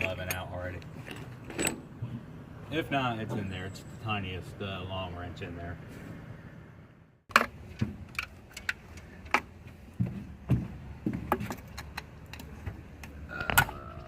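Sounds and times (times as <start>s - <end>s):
metal tools clinking: 0.0s - 1.9s.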